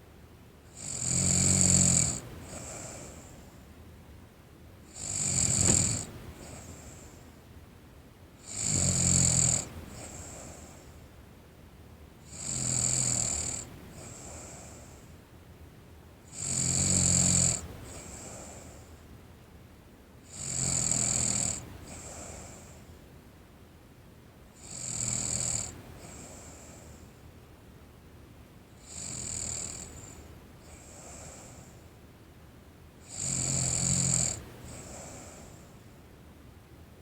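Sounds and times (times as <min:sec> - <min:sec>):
girl snoring: 0:00.8 - 0:03.2, 0:05.0 - 0:06.7, 0:08.5 - 0:10.8
faint breath: 0:02.2 - 0:03.8, 0:05.0 - 0:07.5, 0:09.6 - 0:11.2, 0:13.8 - 0:15.3, 0:17.6 - 0:19.2, 0:21.6 - 0:23.1, 0:25.7 - 0:27.3, 0:29.6 - 0:32.0, 0:34.4 - 0:36.0.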